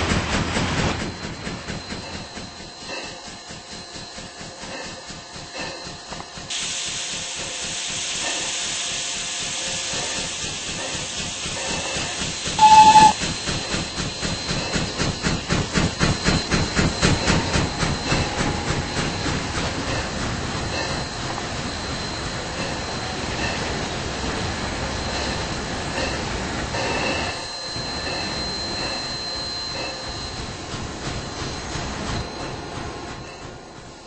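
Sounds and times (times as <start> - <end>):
steam hissing: 0.0 - 34.0
steam whistle blast: 12.6 - 13.2.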